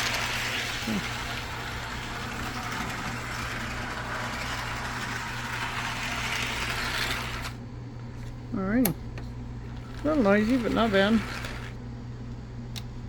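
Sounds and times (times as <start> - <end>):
model train motor whirring: 0.0 - 7.6, 9.7 - 11.8.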